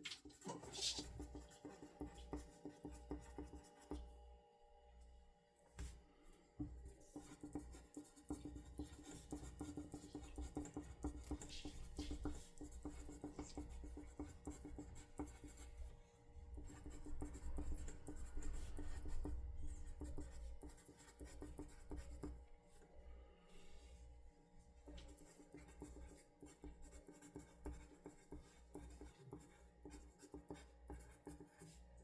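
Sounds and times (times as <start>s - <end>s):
pen scratching on paper: 0.1s - 4.0s, 7.1s - 15.7s, 16.6s - 22.4s, 25.0s - 31.8s.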